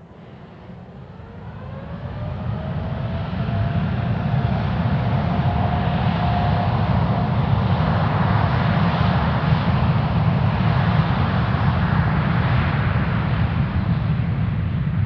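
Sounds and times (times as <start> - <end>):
faint jet engine whine: 0.0 - 15.0.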